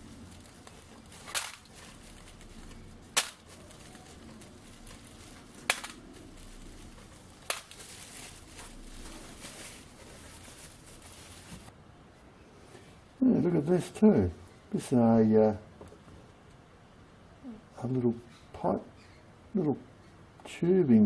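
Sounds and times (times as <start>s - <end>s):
packing material rustling: 0.0s - 11.7s.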